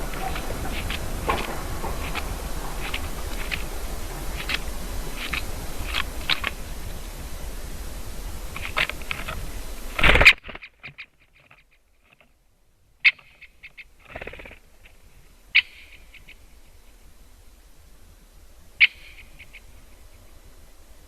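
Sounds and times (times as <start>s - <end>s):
soft ticks: 0.0s - 7.2s
burst of noise: 0.0s - 10.8s
woodpecker calls: 0.0s - 12.4s, 13.0s - 17.0s, 18.7s - 20.5s.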